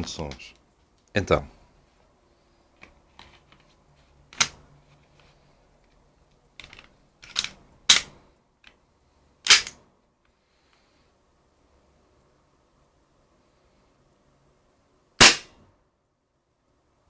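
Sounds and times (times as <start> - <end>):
gas pistol shots: 9.5 - 9.8, 15.2 - 15.6
pistol handling clicks: 9.5 - 9.8, 15.2 - 15.5.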